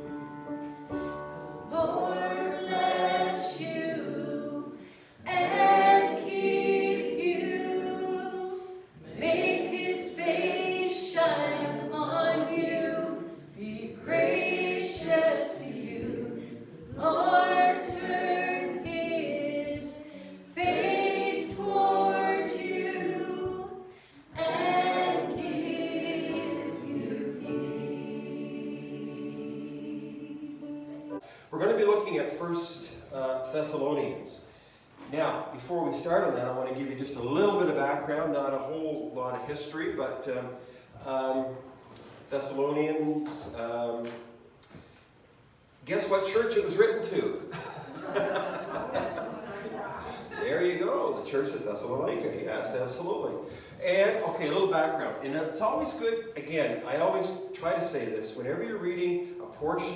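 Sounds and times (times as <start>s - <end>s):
group singing a hymn: 0.0s - 31.4s, 45.3s - 59.9s.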